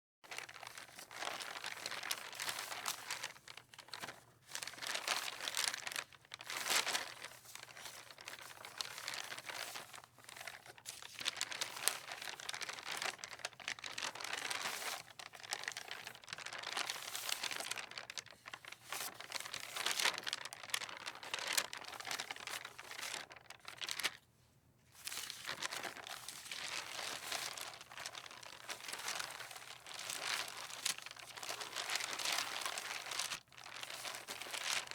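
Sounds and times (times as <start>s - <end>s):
paper rustling in the wind: 0.2s - 24.3s, 24.9s - 34.9s.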